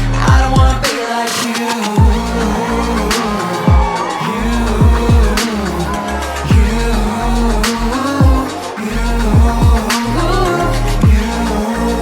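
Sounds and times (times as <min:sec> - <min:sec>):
live pop band instrumental: 0:00.0 - 0:12.0
deep kick drum: 0:00.2 - 0:00.8, 0:02.0 - 0:04.0, 0:04.6 - 0:05.5, 0:06.5 - 0:08.5, 0:09.3 - 0:09.9, 0:11.0 - 0:11.3
held synth tones: 0:02.0 - 0:12.0.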